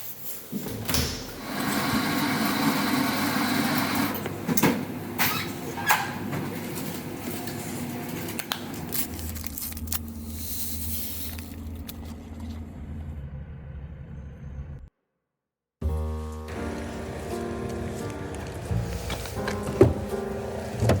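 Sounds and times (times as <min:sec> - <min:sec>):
truck engine humming: 0:08.8 - 0:14.9, 0:15.8 - 0:21.0.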